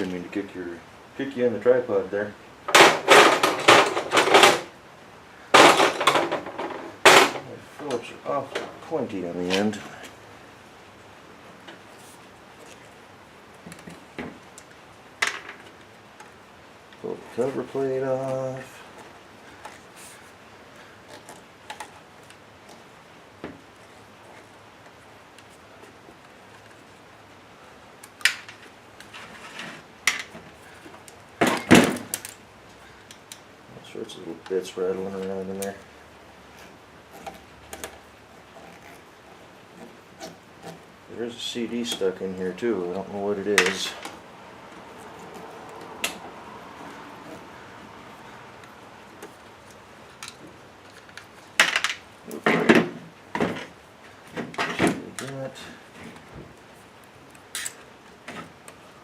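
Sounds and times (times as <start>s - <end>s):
metal and plastic parts clattering: 2.7s - 4.7s, 5.6s - 7.5s, 28.2s - 32.4s, 50.2s - 56.3s.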